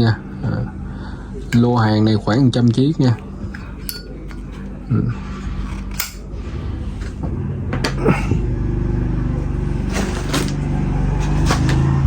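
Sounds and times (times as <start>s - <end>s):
metal lighters clicking: 3.8s - 4.4s
low engine hum: 6.3s - 12.0s.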